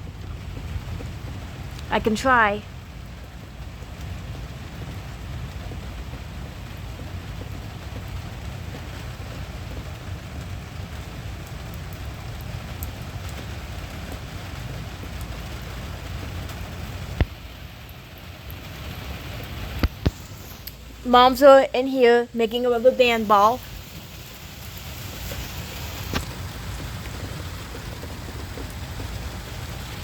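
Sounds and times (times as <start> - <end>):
heavy rain: 0.0 - 30.0
low thunder rumble: 18.9 - 30.0.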